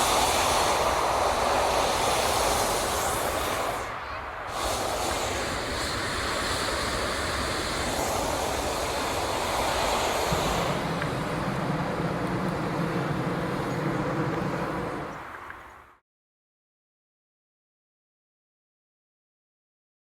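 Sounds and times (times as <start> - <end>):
propane burner blast: 0.0 - 15.5
deep rumble: 10.7 - 15.2.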